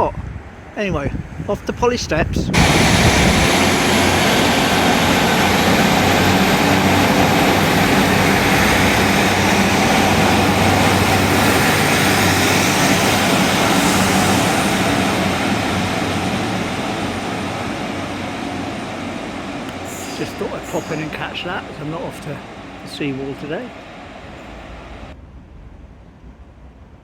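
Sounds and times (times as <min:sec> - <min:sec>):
diesel train engine: 0:02.5 - 0:27.0
faint high whine: 0:19.4 - 0:25.2.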